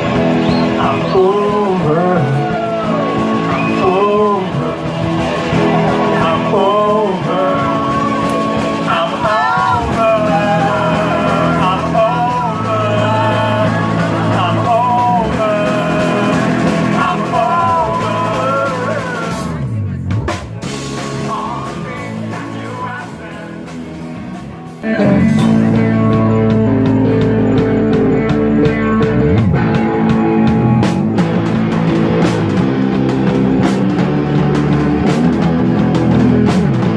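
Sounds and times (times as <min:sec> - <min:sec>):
rock band playing: 0:00.0 - 0:36.9.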